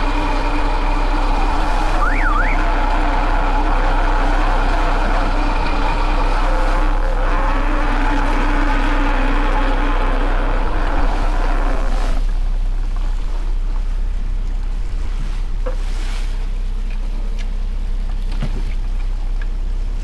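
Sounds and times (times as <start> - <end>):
high-pitched whine: 0.0 - 12.3
boat motor droning: 0.0 - 20.0
wind: 0.0 - 20.0.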